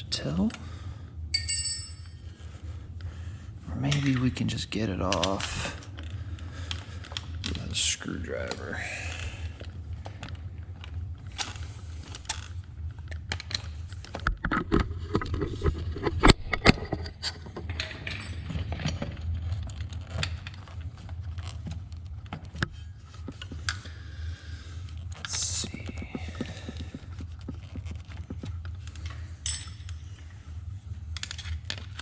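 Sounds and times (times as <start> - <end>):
low steady hum: 0.0 - 32.0
hand tools clinking on metal: 1.4 - 2.2.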